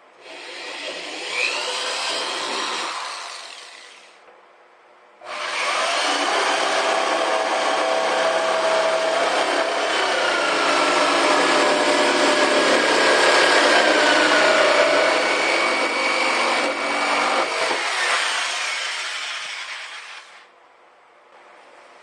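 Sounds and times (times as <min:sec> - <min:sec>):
sawing with squeaky tones: 0:07.6 - 0:20.5.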